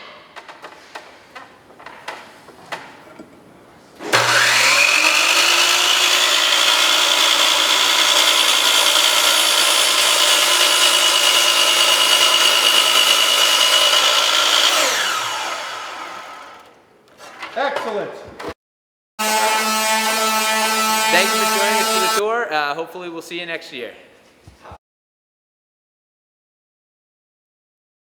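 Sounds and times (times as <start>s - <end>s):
miter saw motor whining: 4.1s - 16.7s, 19.2s - 22.2s.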